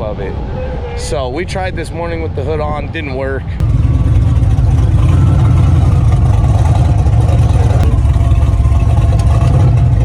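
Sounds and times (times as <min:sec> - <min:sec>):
car engine running: 0:03.6 - 0:10.0.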